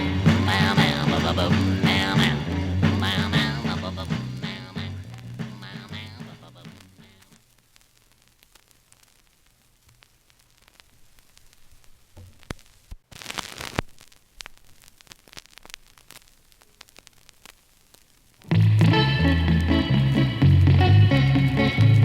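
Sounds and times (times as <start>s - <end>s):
music: 0.0s - 7.3s, 18.5s - 22.0s
vinyl record crackle: 0.0s - 22.0s.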